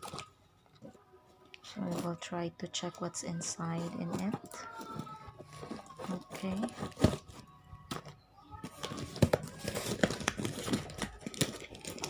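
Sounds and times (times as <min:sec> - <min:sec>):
packaging crinkling and rustling: 0:00.0 - 0:00.3, 0:03.4 - 0:12.0
packaging tearing: 0:08.7 - 0:12.0.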